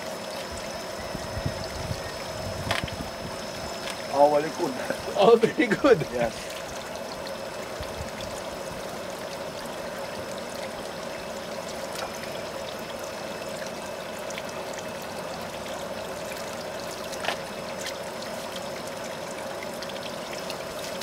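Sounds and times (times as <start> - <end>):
water pouring into a pond: 0.0 - 21.0
small water splashes: 4.7 - 21.0.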